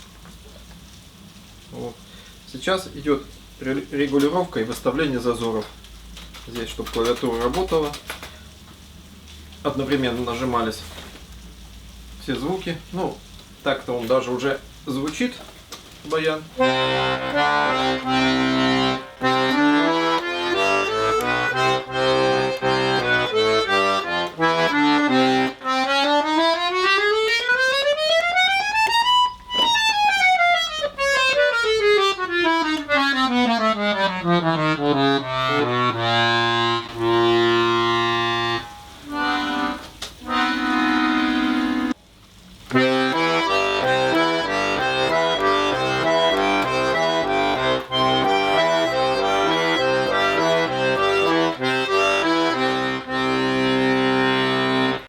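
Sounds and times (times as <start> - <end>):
button accordion playing: 16.6 - 42.0, 42.7 - 55.0.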